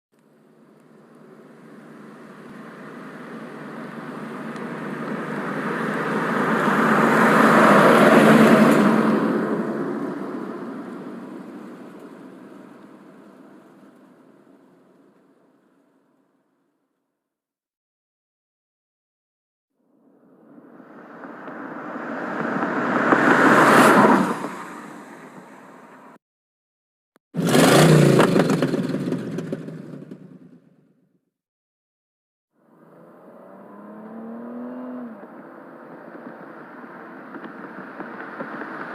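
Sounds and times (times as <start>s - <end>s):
car driving by: 1.1s - 15.0s, 20.0s - 26.2s, 32.6s - 38.9s.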